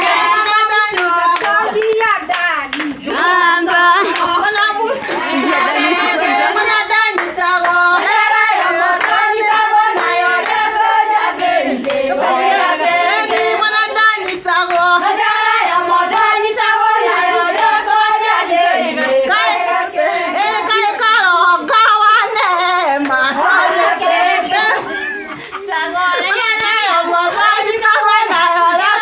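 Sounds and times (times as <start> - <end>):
hand claps: 0.0 - 7.8, 8.6 - 12.0
high voices singing together: 0.0 - 29.0.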